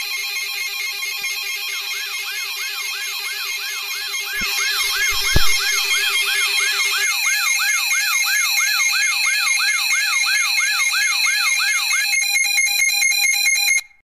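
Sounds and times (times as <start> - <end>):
electronic siren wail: 0.0 - 13.7
high electronic tones: 4.4 - 6.8.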